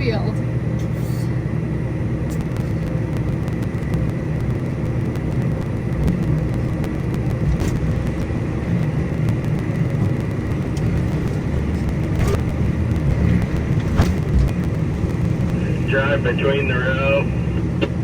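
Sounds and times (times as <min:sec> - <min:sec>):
engine drone inside vehicle cab: 0:00.0 - 0:18.0
faint steady whine: 0:00.0 - 0:18.0.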